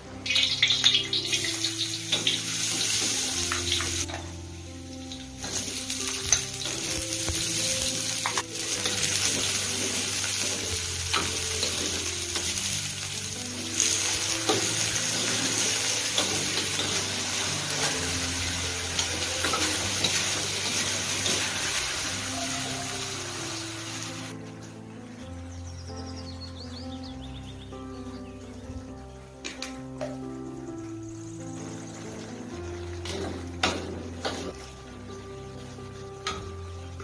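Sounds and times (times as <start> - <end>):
soft background music: 0.0 - 37.0
food sizzling in oil: 0.2 - 24.3, 31.1 - 37.0.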